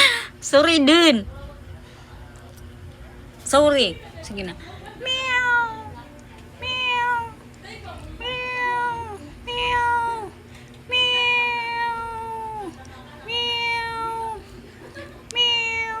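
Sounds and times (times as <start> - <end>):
cat meowing: 5.0 - 6.0, 6.6 - 7.4, 8.2 - 14.4, 15.4 - 16.0.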